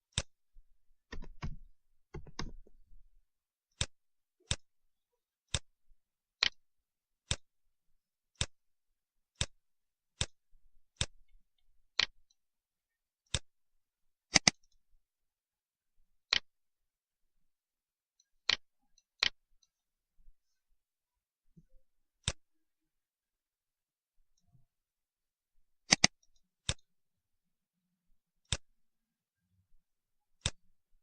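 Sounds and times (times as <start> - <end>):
computer mouse clicking: 0.1 - 0.4, 1.1 - 2.8, 3.7 - 4.7, 5.5 - 5.7, 6.4 - 6.6, 7.2 - 7.5, 8.3 - 8.6, 9.3 - 9.6, 10.2 - 11.4, 13.2 - 13.5, 14.3 - 14.8, 16.3 - 16.5, 22.2 - 22.5, 25.9 - 26.9, 28.4 - 28.7, 30.4 - 30.7.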